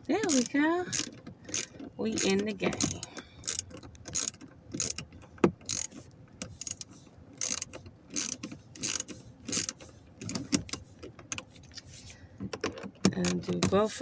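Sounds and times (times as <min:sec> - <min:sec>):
hand ratchet clicking: 0:00.2 - 0:05.0, 0:05.6 - 0:10.8.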